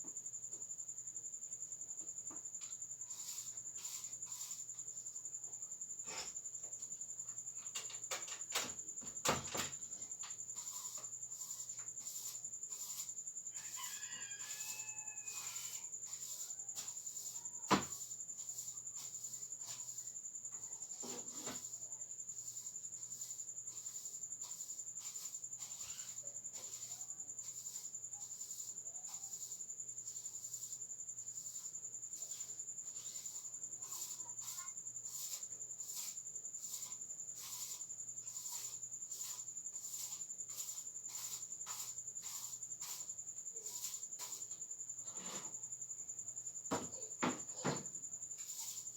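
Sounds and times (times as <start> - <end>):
crickets chirping: 0.0 - 48.9
rooster crowing faintly: 12.9 - 18.0.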